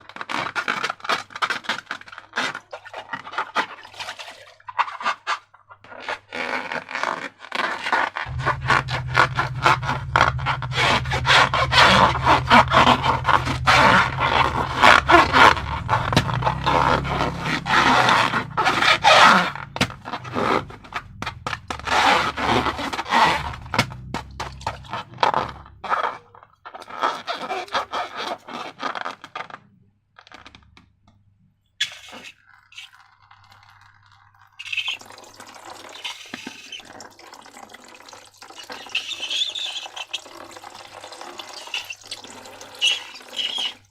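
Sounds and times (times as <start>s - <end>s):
slime crackling and scraping: 0.0s - 30.7s, 38.3s - 43.9s
liquid-like noise: 7.9s - 28.5s, 31.8s - 43.9s.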